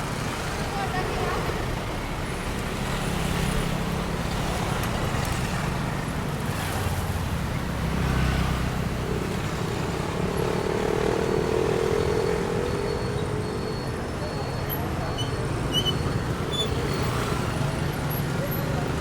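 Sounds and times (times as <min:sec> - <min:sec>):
passing vehicle engines: 0:00.0 - 0:19.0.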